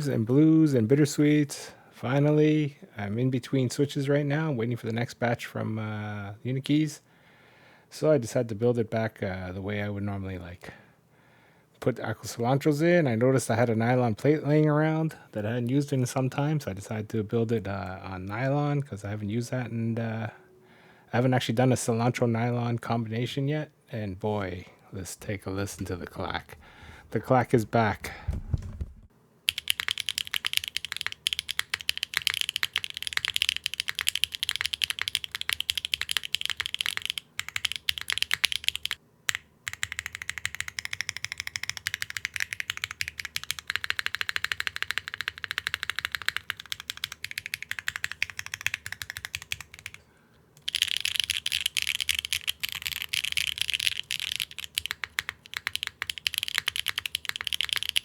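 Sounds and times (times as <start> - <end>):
mechanical keyboard typing: 28.6 - 50.0, 50.6 - 58.0.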